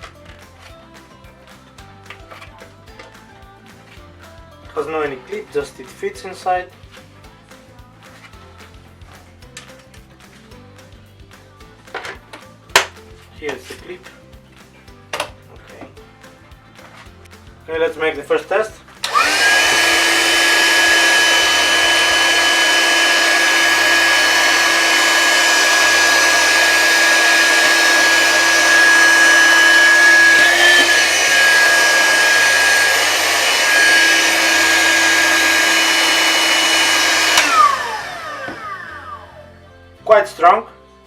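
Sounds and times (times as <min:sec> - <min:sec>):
hand vacuum motor whine: 0:19.0 - 0:39.6.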